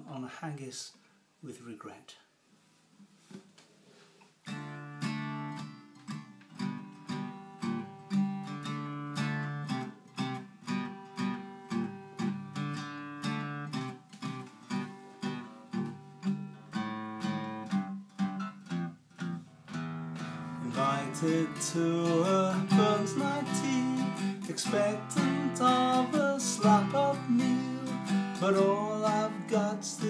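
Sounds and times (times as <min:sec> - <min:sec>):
strummed guitar chords: 0:04.5 - 0:30.0.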